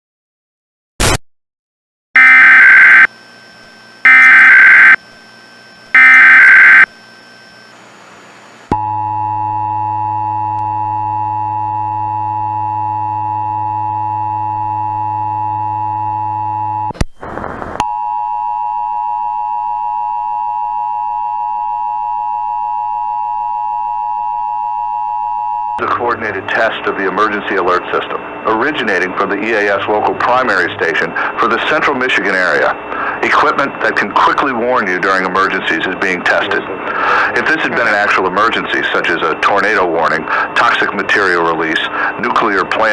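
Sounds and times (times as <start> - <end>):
data tone bursts: 2.2 - 3.1, 4.0 - 5.0, 5.9 - 6.9
two-tone attention signal: 2.2 - 3.1, 4.1 - 5.0, 6.0 - 6.9.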